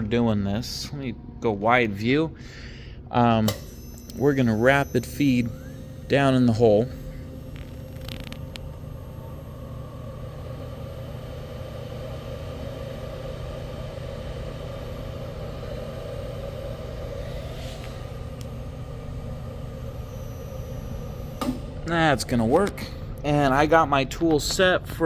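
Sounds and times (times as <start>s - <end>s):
boring machine motor running: 3.2s - 25.0s.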